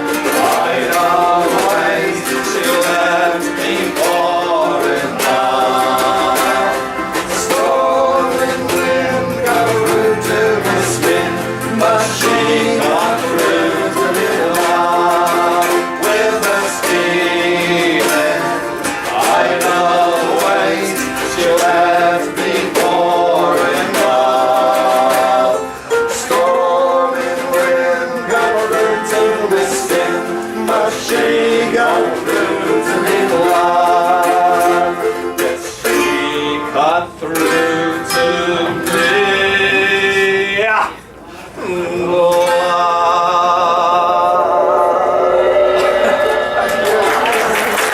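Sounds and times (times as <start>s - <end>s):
melody of held notes: 0.0s - 43.7s
person singing: 0.0s - 47.9s
strummed and plucked guitar: 0.0s - 47.9s.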